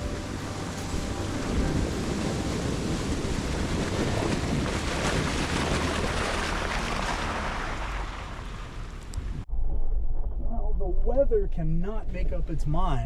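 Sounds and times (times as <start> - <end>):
wind on microphone: 0.0 - 7.0
tyres rushing through wet slush: 0.0 - 9.2
low rumble: 0.0 - 13.0.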